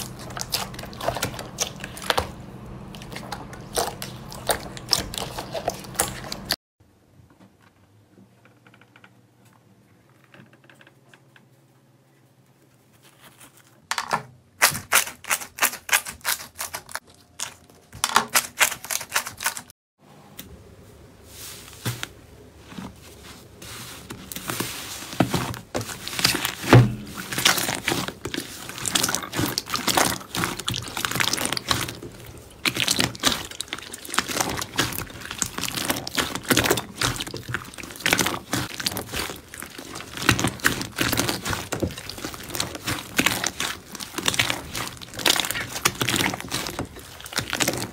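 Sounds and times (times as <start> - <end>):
slime clicking and crackling: 0.0 - 6.6, 25.8 - 47.9.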